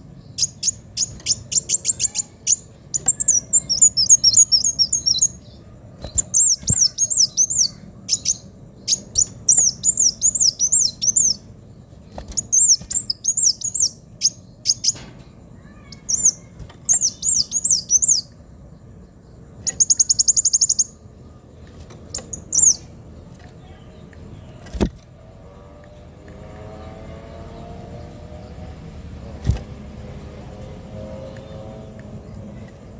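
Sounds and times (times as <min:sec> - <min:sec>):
bird singing high sharp chirps: 0:00.0 - 0:11.5, 0:12.1 - 0:18.4, 0:19.6 - 0:21.1, 0:22.1 - 0:23.0
rapid buzzy bird trill: 0:00.0 - 0:11.5, 0:12.1 - 0:18.3.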